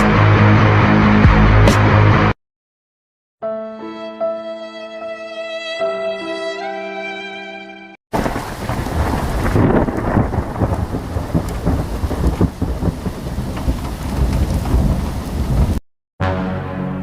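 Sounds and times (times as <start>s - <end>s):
heavy rain: 8.1s - 15.8s
deep rumbling thunder: 8.2s - 15.8s.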